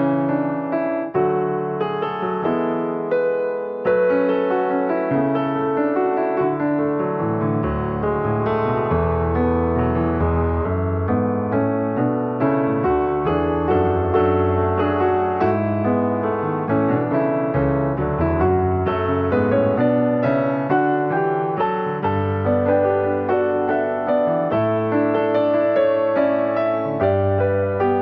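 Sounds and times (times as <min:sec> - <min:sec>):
piano music: 0:00.0 - 0:28.0.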